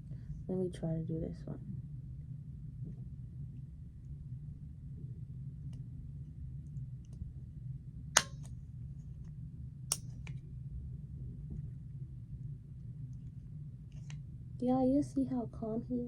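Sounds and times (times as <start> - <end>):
steady low hum: 0.0 - 16.0
nail clipper snipping: 8.2 - 8.5.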